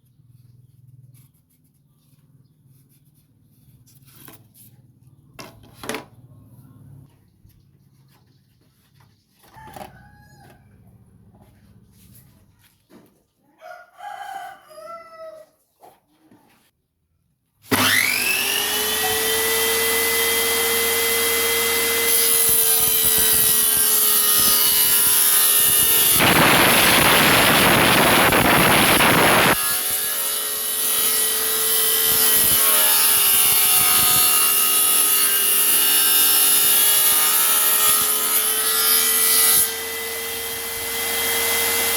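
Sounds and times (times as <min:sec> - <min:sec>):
saw blade cutting wood: 0:17.6 - 0:41.9
table saw motor whining: 0:17.6 - 0:41.9.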